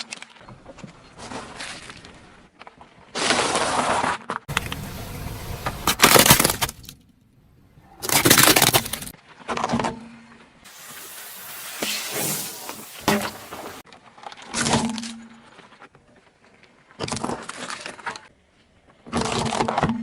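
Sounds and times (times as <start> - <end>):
tyre crushing objects: 8.0 - 9.1
sharp pop: 10.7 - 13.8.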